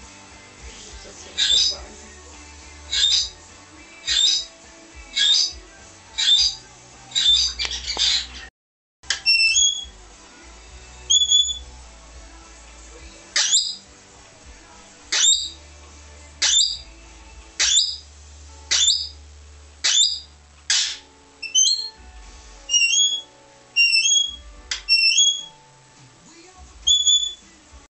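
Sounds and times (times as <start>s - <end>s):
parrot shrieking: 1.4s - 1.8s, 2.9s - 3.4s, 4.0s - 4.5s, 5.1s - 5.6s, 6.2s - 8.5s, 9.2s - 9.9s, 11.1s - 11.6s, 13.4s - 13.8s, 15.1s - 15.6s, 16.4s - 16.8s, 17.6s - 18.0s, 18.7s - 19.2s, 19.8s - 22.0s, 22.7s - 25.6s, 26.8s - 27.4s
parrot two-note rising whistles: 19.8s - 22.0s, 22.7s - 25.6s, 26.9s - 27.4s.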